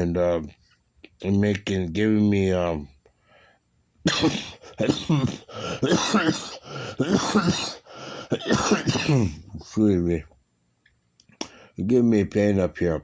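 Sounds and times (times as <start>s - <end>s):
woman coughing: 4.1s - 9.4s.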